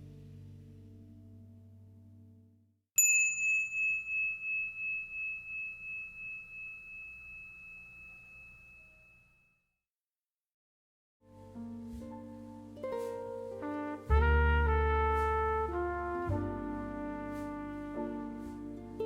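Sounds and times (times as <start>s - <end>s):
small metal bell ringing: 3.0s - 9.5s.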